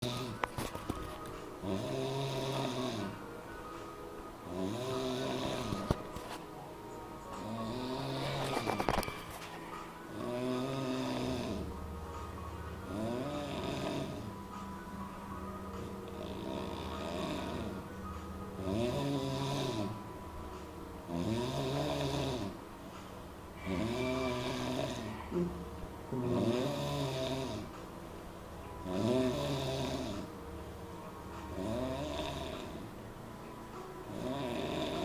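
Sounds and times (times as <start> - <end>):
person snoring: 0.0 - 0.4, 1.6 - 3.2, 4.4 - 6.0, 7.4 - 9.4, 10.1 - 11.8, 12.9 - 14.4, 16.2 - 17.8, 18.6 - 20.0, 21.1 - 22.6, 23.6 - 27.7, 28.8 - 30.3, 31.5 - 32.8, 34.1 - 35.0.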